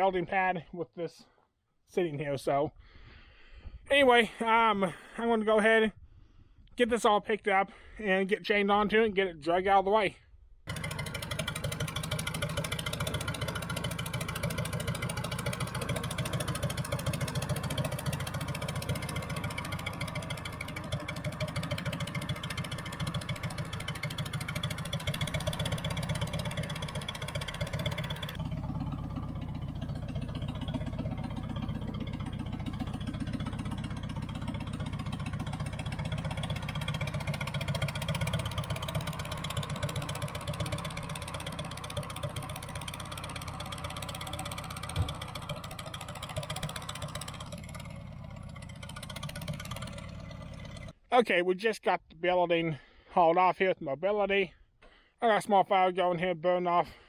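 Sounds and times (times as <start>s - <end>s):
backhoe engine running: 10.7s - 51.0s.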